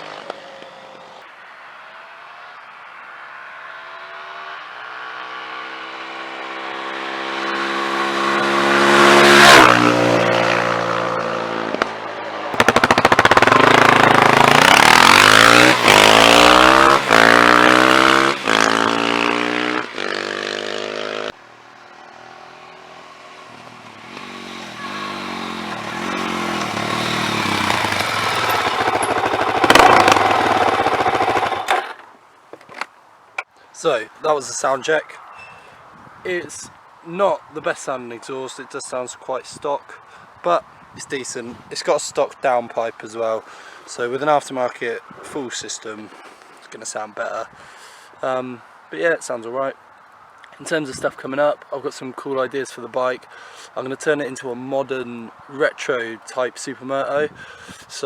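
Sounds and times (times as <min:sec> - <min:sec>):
motorcycle engine passing: 0:00.0 - 0:32.1.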